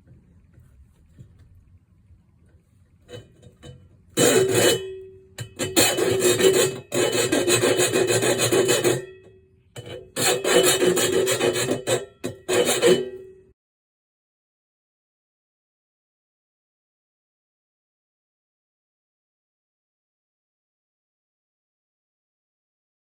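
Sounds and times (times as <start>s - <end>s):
file rasping against cymbal edge: 4.2s - 13.4s.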